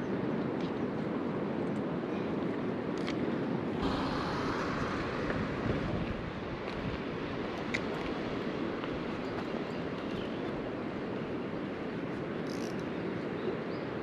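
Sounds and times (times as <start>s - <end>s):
wind buffeting microphone: 2.7s - 11.8s
steady rushing background: 3.6s - 9.2s.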